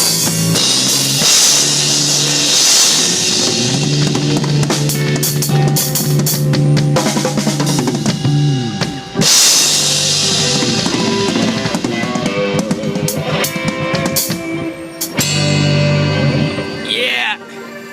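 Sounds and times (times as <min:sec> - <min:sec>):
cymbal crash: 0:00.0 - 0:05.5
drum kit playing: 0:00.0 - 0:17.5
sustained low notes: 0:00.5 - 0:14.1.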